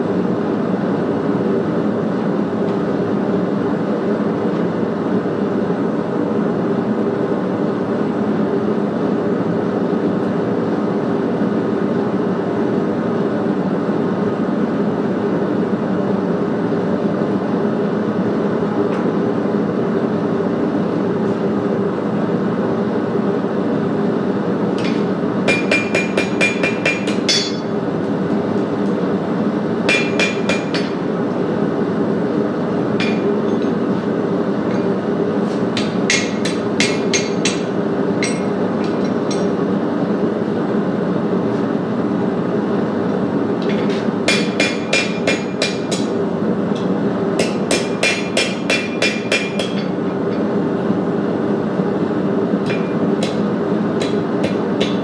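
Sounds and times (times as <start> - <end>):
hammer ringing on an anvil: 24.8 - 27.8, 29.9 - 31.0, 33.0 - 33.8, 35.8 - 38.6, 44.3 - 46.1, 47.4 - 50.0.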